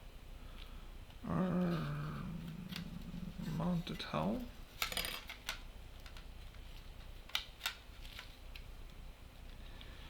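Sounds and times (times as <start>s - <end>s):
small parts clicking and tapping: 4.8s - 8.7s.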